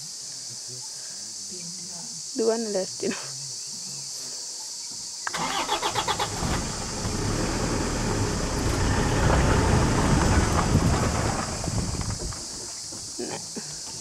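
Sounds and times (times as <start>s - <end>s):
engine running with low rumble: 5.3s - 13.0s
engine starter cranking: 5.3s - 13.0s.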